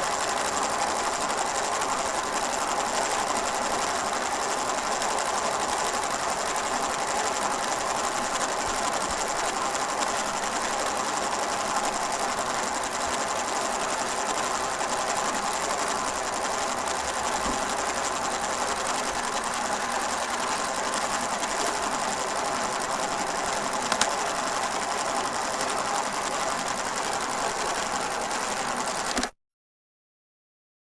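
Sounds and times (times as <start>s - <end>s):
projector motor whirring: 0.0s - 29.3s
film projector clattering: 0.0s - 29.4s.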